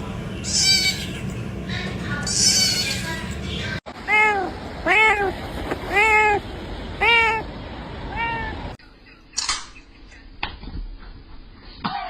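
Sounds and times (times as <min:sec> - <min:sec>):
cat meowing: 0:00.4 - 0:01.1, 0:02.3 - 0:03.0, 0:04.0 - 0:06.4, 0:07.0 - 0:07.5, 0:08.1 - 0:08.8.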